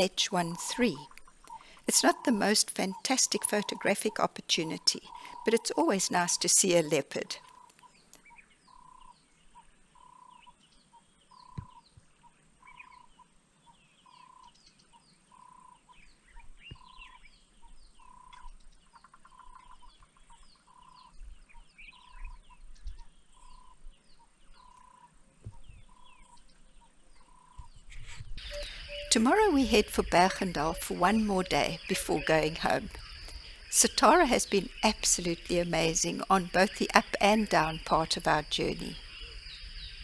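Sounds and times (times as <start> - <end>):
bird piping note: 0.0 - 7.9, 28.4 - 40.0
birds chirping and whistling: 0.4 - 6.5, 14.0 - 40.0.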